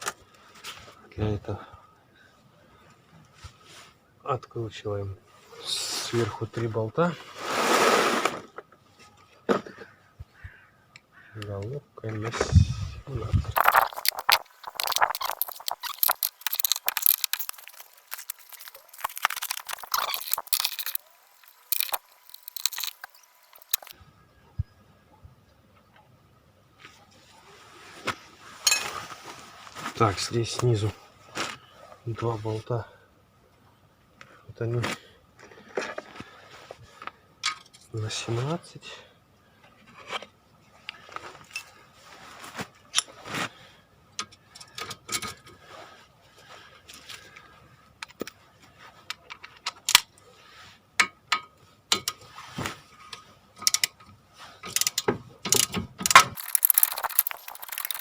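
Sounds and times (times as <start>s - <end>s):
metal clinking: 13.6s - 23.9s, 56.4s - 58.0s
ratchet wrench clicking: 56.4s - 58.0s.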